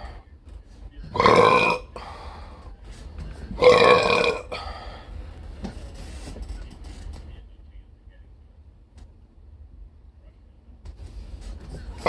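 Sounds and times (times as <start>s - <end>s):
loud drawn-out burps: 1.1s - 2.0s, 3.6s - 4.6s.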